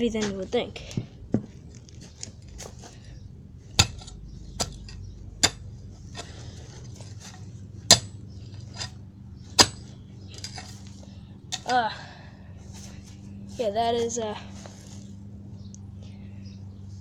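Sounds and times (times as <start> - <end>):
pickaxe striking ground: 3.8 - 11.8.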